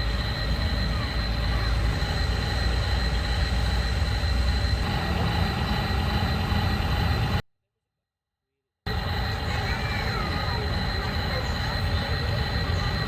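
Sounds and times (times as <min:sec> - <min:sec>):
toy excavator motor running: 0:00.0 - 0:05.2.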